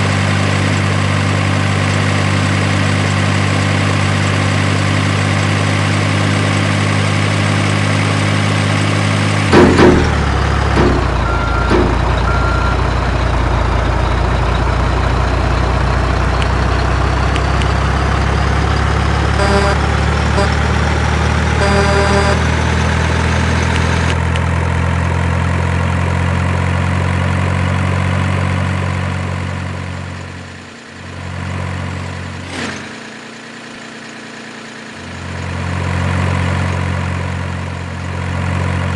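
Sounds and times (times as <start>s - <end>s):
heavy diesel engine idling: 0.0s - 32.4s
loud metal clank: 9.5s - 12.2s
short beeps: 19.4s - 20.7s, 21.6s - 22.5s.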